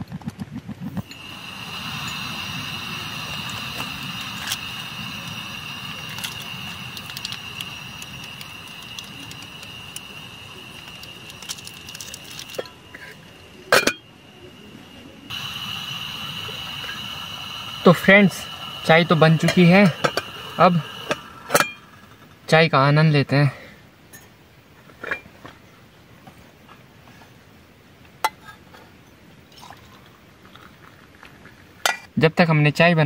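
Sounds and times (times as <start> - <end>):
camping stove burner hissing: 0.9 - 23.8
pot and cups clinking: 5.8 - 14.0.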